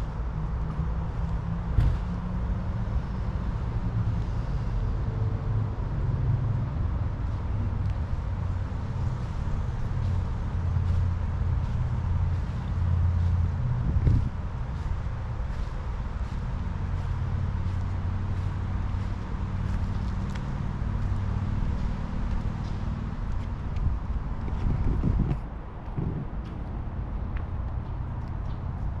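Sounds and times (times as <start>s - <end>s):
motor vehicle engine rumbling: 6.7s - 29.0s.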